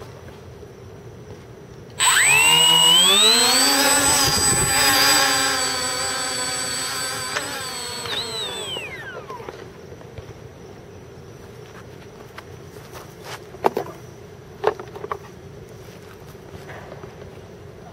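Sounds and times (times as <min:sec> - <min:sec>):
electric motors and propellers whining: 0:02.0 - 0:09.9.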